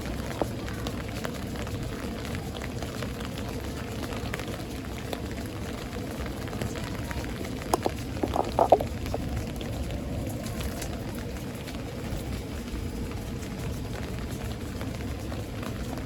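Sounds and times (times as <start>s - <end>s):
steady rain falling: 0.0s - 16.0s
drops ticking: 7.7s - 9.6s.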